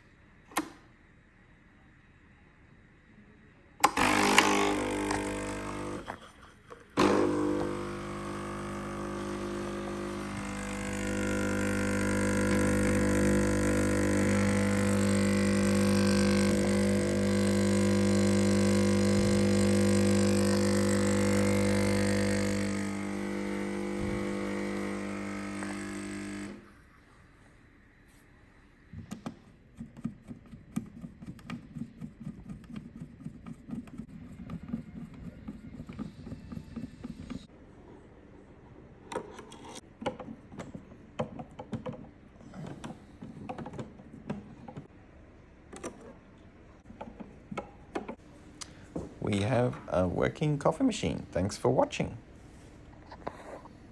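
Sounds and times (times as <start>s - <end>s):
espresso machine pump buzzing: 3.8s - 6.2s, 7.0s - 26.9s, 35.7s - 37.5s.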